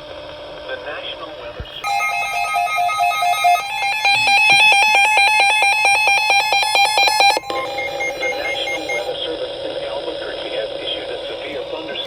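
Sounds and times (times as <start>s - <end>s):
warbling electronic alert beeps: 1.8s - 9.1s.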